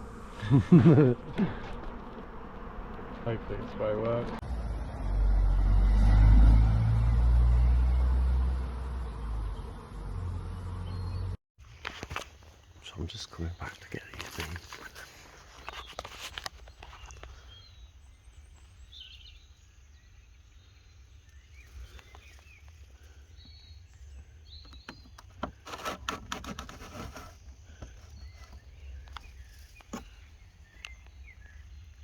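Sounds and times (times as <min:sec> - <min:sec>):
low rumble of wind or traffic: 0:00.0 - 0:11.3
distant bird chirps: 0:06.2 - 0:11.4, 0:12.8 - 0:25.7, 0:27.0 - 0:32.0.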